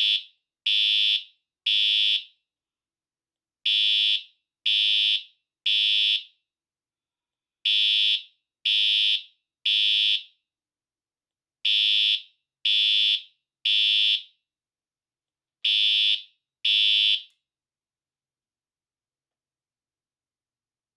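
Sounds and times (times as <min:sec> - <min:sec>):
fire alarm horn beeps: 0:07.7 - 0:10.2, 0:15.6 - 0:17.3.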